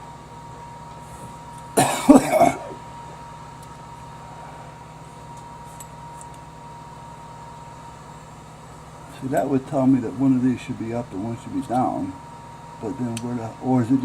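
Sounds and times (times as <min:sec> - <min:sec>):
faint hum with high tone: 0:00.0 - 0:14.0
man coughing: 0:01.8 - 0:02.8.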